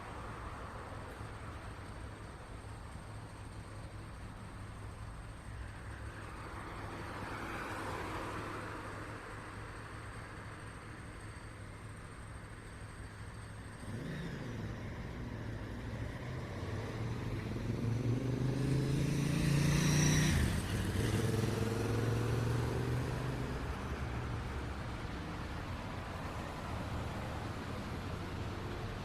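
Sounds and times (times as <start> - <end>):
low traffic hum: 0.0 - 29.0
motor vehicle passing by: 13.8 - 25.0.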